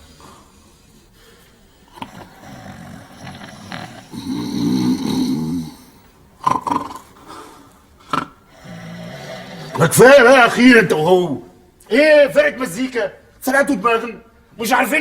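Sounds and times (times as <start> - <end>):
short sharp snorts: 0.0 - 9.8
men snoring: 0.0 - 10.0.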